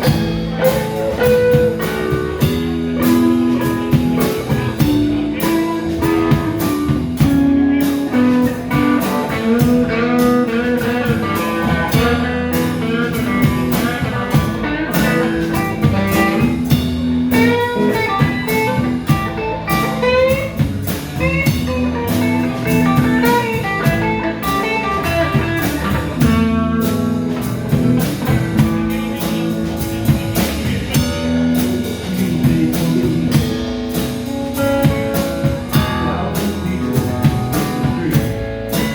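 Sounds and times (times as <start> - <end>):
drum kit: 0.0 - 38.9
guitar: 0.0 - 38.9
live blues band jamming: 0.0 - 38.9.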